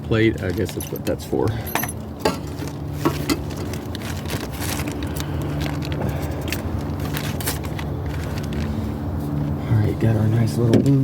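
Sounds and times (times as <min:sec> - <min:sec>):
steady low hum: 0:00.0 - 0:11.0
metal parts clinking and rustling: 0:00.2 - 0:08.7.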